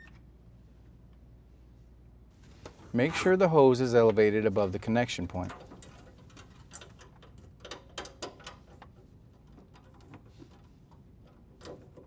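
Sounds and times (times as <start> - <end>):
parts clicking and knocking: 5.3 - 12.0.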